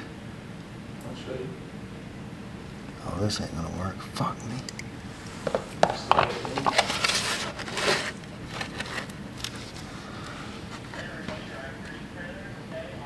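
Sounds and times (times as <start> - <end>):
sharp handling clicks and knocks: 4.7 - 11.0
rustling: 4.7 - 11.5.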